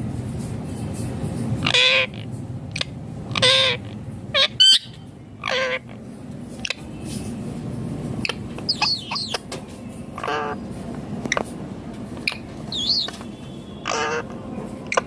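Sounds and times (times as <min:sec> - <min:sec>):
parakeet chirping: 0:01.6 - 0:06.0, 0:06.6 - 0:06.9, 0:08.2 - 0:09.5, 0:10.2 - 0:10.6, 0:12.2 - 0:15.0
parakeet squawking: 0:01.6 - 0:06.0, 0:06.6 - 0:06.9, 0:08.2 - 0:09.5, 0:10.2 - 0:10.6, 0:12.2 - 0:15.0
high squeaks: 0:12.2 - 0:14.3.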